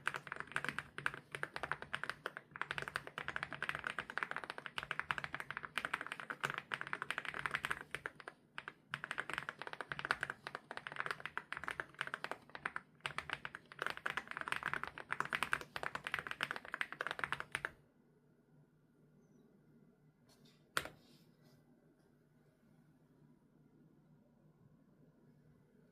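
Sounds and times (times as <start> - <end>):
fast mechanical keyboard typing: 0.0 - 17.8.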